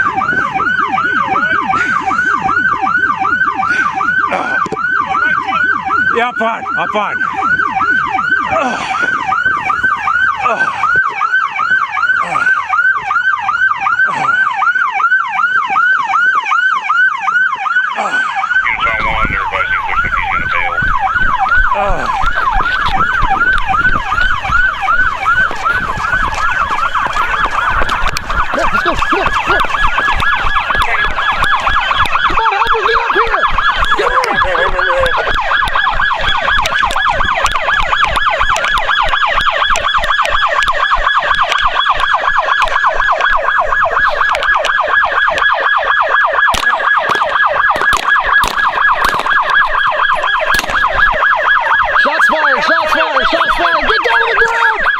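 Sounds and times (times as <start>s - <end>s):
police siren yelping: 0.0s - 54.9s
low rumble with ticks: 18.6s - 45.6s.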